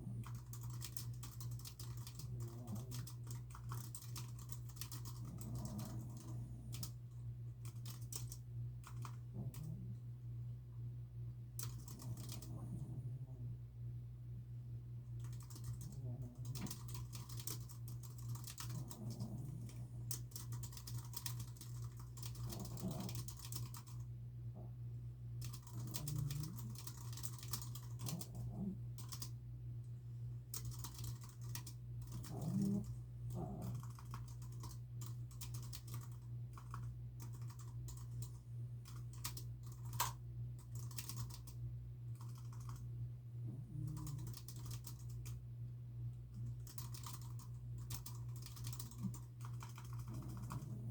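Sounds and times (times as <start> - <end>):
steady low hum: 0.0 - 50.9
typing on computer keyboard: 0.2 - 6.9, 7.6 - 9.8, 11.6 - 12.7, 15.2 - 24.0, 25.4 - 29.3, 30.5 - 42.8, 43.9 - 45.4, 46.6 - 50.8
dog snoring softly: 1.9 - 4.1, 4.8 - 7.0, 9.0 - 10.1, 11.6 - 13.6, 15.5 - 23.7, 25.6 - 29.2, 32.1 - 34.5, 43.4 - 44.6, 48.7 - 50.9.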